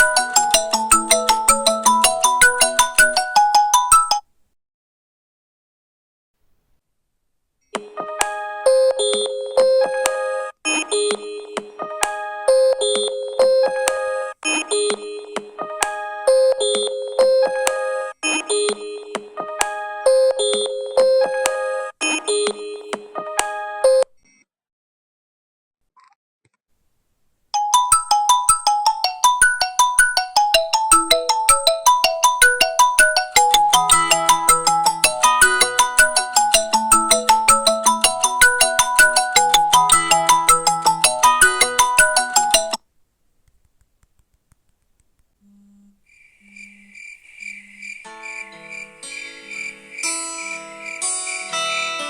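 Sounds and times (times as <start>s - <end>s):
electronic phone ringtone melody: 0.0s - 4.2s, 27.6s - 42.8s, 48.0s - 52.0s
ringtone of fast short notes: 0.0s - 4.2s, 27.6s - 42.8s
high chirping tone pulsing: 45.5s - 52.0s.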